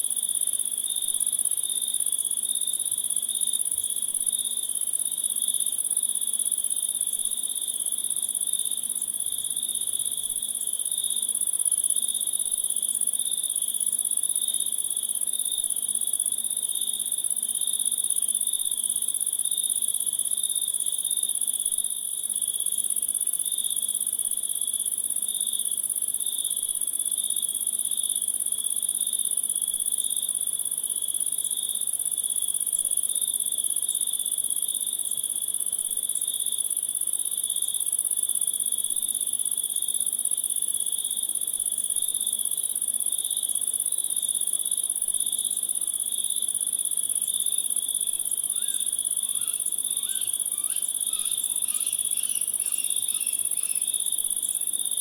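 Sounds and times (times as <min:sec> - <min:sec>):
insects trilling: 0:46.8 - 0:55.0.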